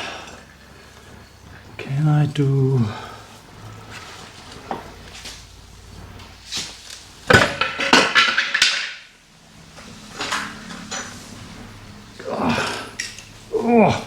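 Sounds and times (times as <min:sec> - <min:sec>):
metal clanking and rattling: 0:03.4 - 0:13.4.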